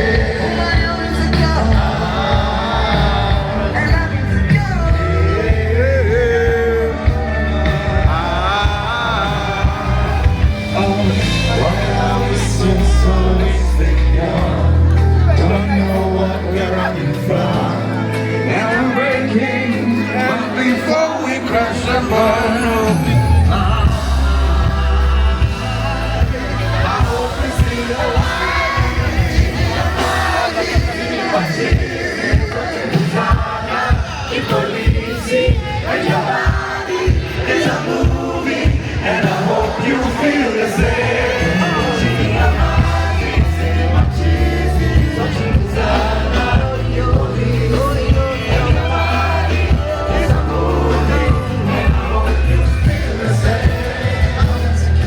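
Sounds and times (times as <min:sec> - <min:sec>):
drum beat: 0:00.0 - 0:13.3, 0:23.1 - 0:55.0
deep sustained bass: 0:00.0 - 0:17.9, 0:23.1 - 0:30.3
crowd singing along: 0:00.0 - 0:55.0
live pop music: 0:00.0 - 0:55.0
voices singing: 0:00.0 - 0:55.0.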